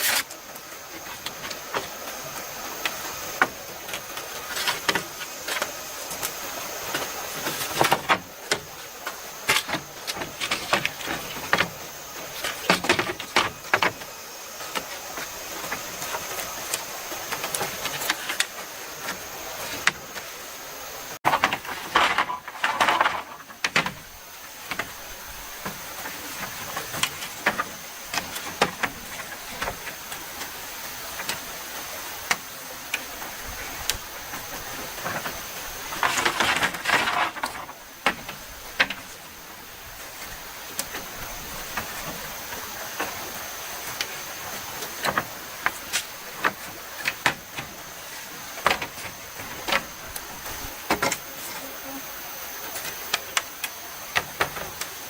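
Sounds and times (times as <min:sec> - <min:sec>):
rustling scrape: 0:00.0 - 0:00.4, 0:21.2 - 0:24.0, 0:34.4 - 0:39.2
steady hiss: 0:00.0 - 0:55.0.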